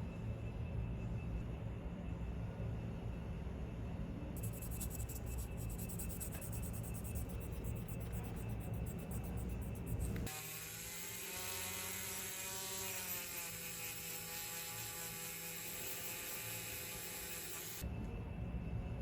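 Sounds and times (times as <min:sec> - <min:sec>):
electric power tool whirring: 0:10.3 - 0:17.8.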